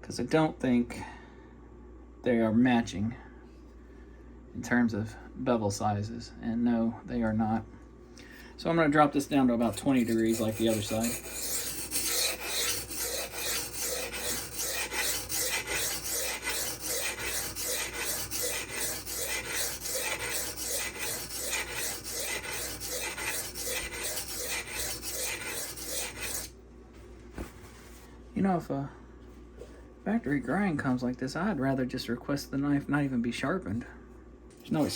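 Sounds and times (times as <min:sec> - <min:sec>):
knife scraping on whetstone: 0:09.6 - 0:26.5.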